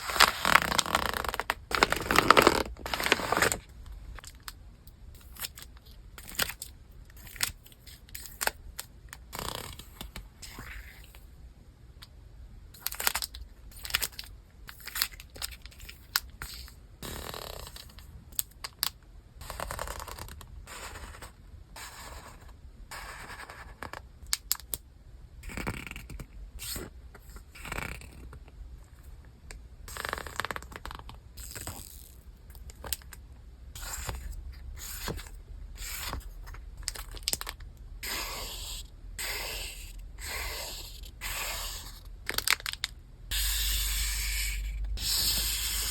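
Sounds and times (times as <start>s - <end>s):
packaging rustling and scraping: 0.0s - 4.4s.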